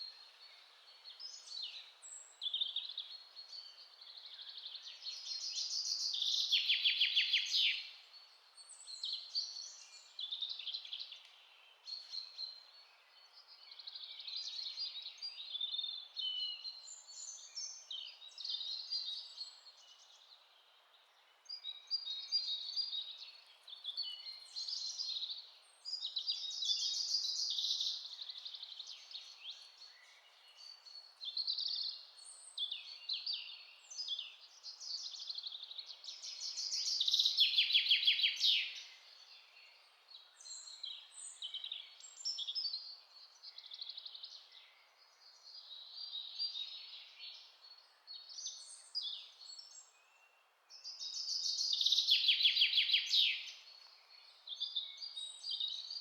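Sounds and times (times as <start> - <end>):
songbirds chirping and whistling: 21.1 - 56.0.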